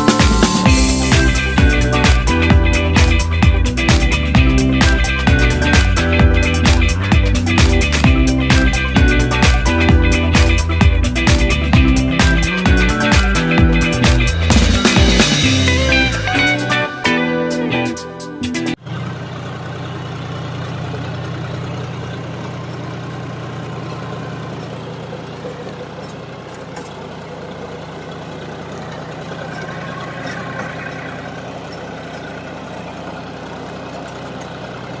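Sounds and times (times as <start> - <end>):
tractor engine droning: 0.0 - 35.0.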